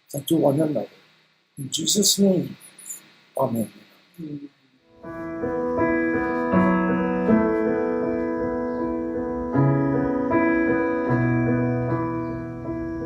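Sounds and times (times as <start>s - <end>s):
piano playing slow chords: 4.9s - 13.0s.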